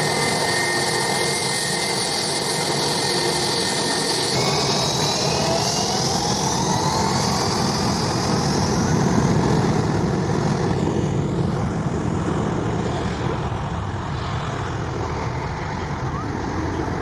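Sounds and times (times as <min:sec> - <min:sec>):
airliner engines running: 0:00.0 - 0:17.0.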